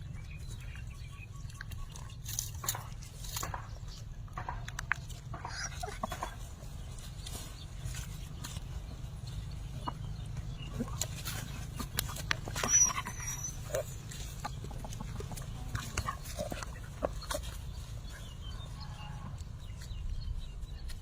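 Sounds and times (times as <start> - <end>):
animal yelps and grunts: 10.7 - 15.0.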